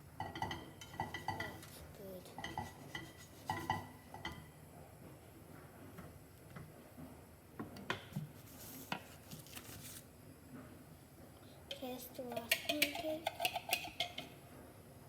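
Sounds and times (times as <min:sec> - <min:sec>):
utensils knocking on frying pan: 0:00.2 - 0:01.6, 0:02.3 - 0:04.5, 0:12.3 - 0:14.3.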